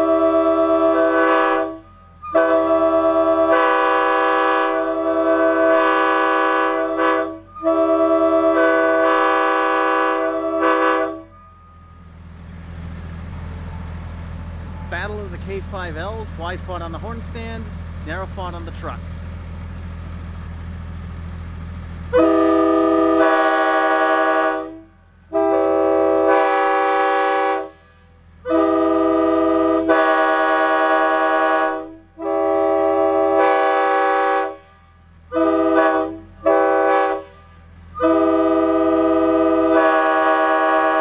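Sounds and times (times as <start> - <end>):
chime air horns blasting: 0.0 - 12.1, 22.1 - 27.8, 35.3 - 41.0.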